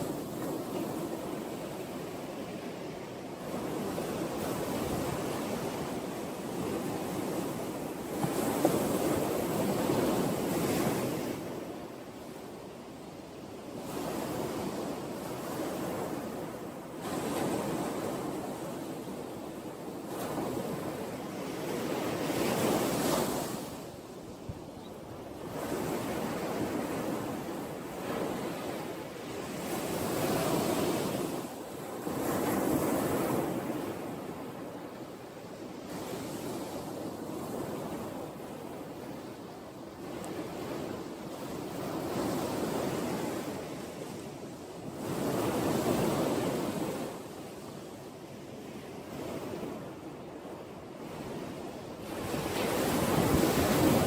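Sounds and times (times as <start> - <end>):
sea waves breaking on shore: 13.7 - 24.3, 25.2 - 54.0
ocean waves breaking: 51.0 - 54.0.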